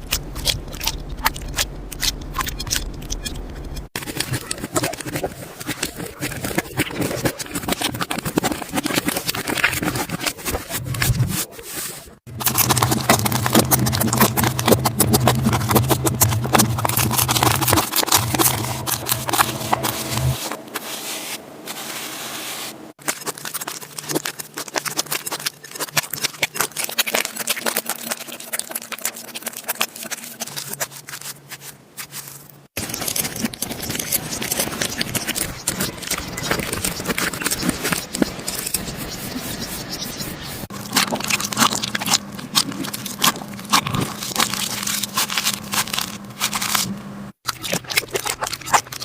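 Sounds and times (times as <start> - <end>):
slime crackling and popping: 12.3 - 20.4, 23.0 - 31.7, 40.7 - 49.0.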